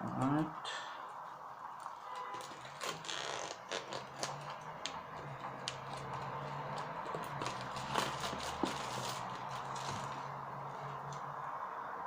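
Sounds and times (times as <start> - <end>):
hands handling cardboard packaging: 1.8 - 10.4.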